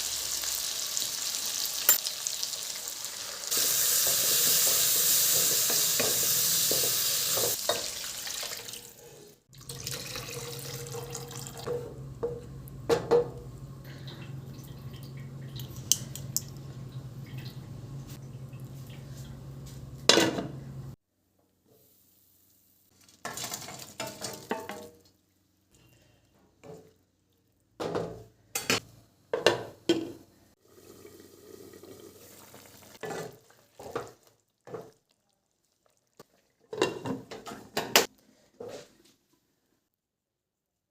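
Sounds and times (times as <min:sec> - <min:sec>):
food sizzling in a pan: 0:00.0 - 0:09.1, 0:30.6 - 0:35.2
dishes and pans clinking: 0:36.7 - 0:38.1.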